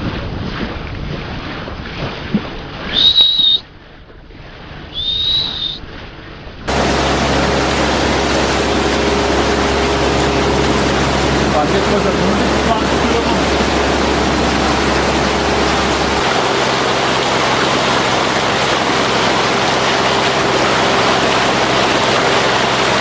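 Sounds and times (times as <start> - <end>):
water noise: 0.0 - 23.0
high whistling tones: 2.9 - 3.6, 4.9 - 5.8
boat engine droning: 6.7 - 23.0.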